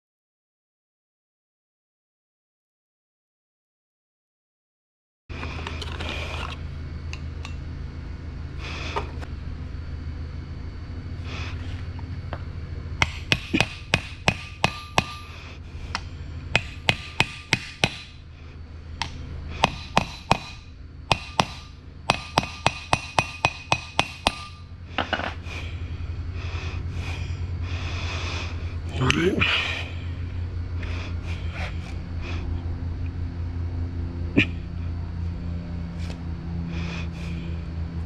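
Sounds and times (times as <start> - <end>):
steady low hum: 5.3 - 38.0
hammer tapping on metal: 13.0 - 15.3, 16.6 - 18.2, 19.0 - 25.3.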